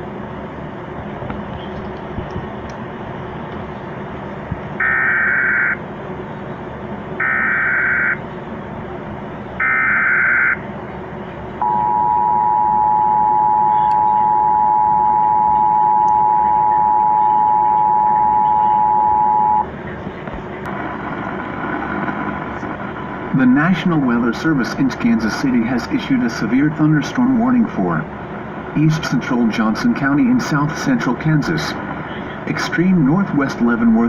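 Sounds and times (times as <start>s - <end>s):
two-tone attention signal: 11.6s - 19.7s.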